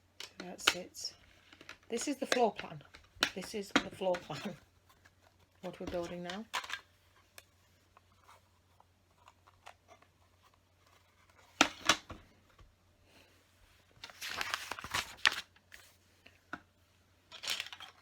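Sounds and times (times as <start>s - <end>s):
plastic pieces clattering: 17.3s - 18.0s.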